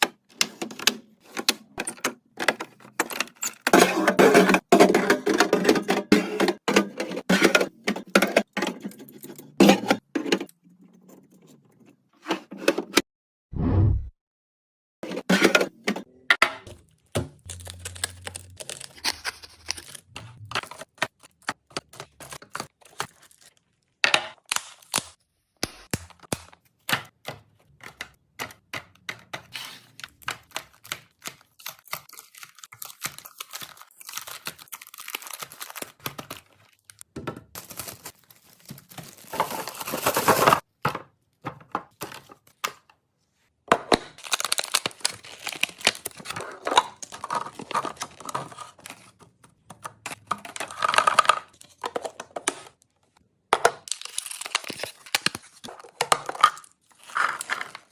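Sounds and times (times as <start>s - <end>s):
plastic containers clicking and knocking: 0.0s - 7.2s, 26.8s - 31.5s, 38.8s - 42.9s, 45.8s - 52.8s, 55.2s - 57.9s
plastic packaging crinkling and tearing: 17.4s - 25.2s, 30.8s - 37.0s, 37.6s - 40.6s, 44.2s - 49.1s, 53.8s - 57.9s.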